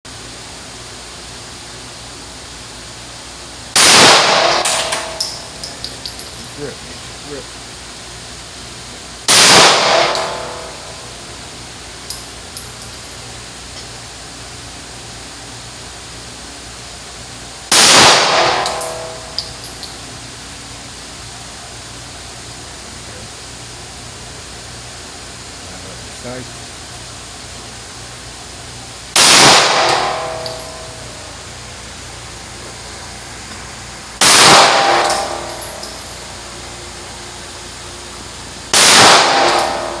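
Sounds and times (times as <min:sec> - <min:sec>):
pistol shot with echo: 0:03.8 - 0:05.2, 0:09.3 - 0:10.8, 0:17.7 - 0:19.4, 0:29.2 - 0:30.9, 0:34.2 - 0:35.9, 0:38.8 - 0:40.0
light metallic clinks: 0:05.1 - 0:06.8, 0:12.1 - 0:13.3, 0:18.7 - 0:20.1, 0:35.0 - 0:36.3.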